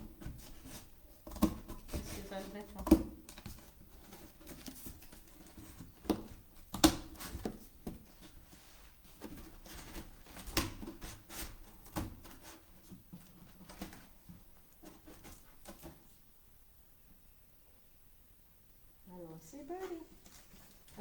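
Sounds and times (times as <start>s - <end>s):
scissors cutting cardboard: 0.1s - 8.1s.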